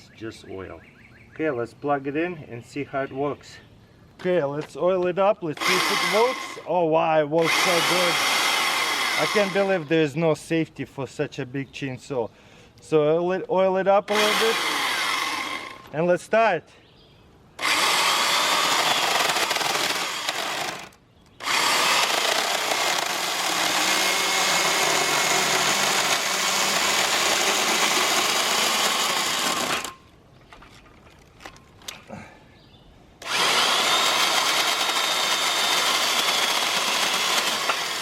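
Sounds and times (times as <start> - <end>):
electric chainsaw cutting wood: 5.6 - 6.6, 7.4 - 9.7, 14.1 - 15.9, 17.6 - 30.0, 33.2 - 38.0.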